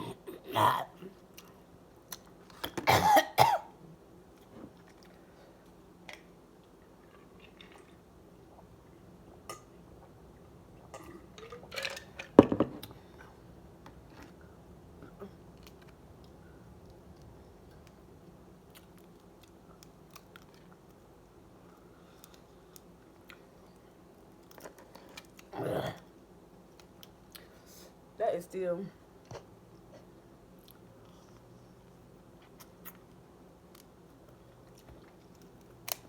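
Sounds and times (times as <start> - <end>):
person coughing: 2.9 - 3.7.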